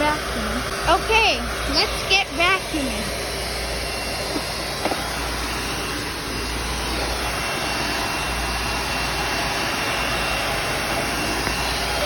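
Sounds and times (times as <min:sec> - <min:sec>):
vacuum cleaner running: 0:00.0 - 0:12.0.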